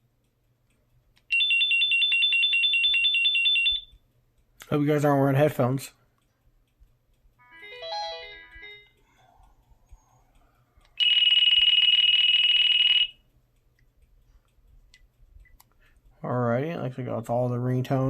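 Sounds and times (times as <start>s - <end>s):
electronic ringtone melody: 7.4s - 9.0s.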